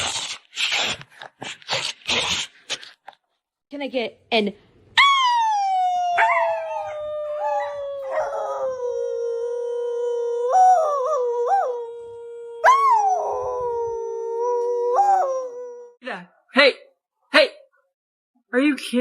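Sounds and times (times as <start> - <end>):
dogs howling: 5.0 - 16.0.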